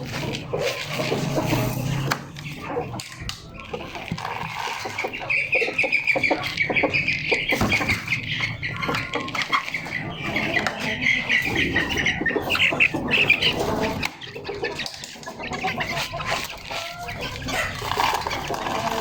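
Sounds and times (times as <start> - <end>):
baby parrots chattering: 0.0 - 19.0.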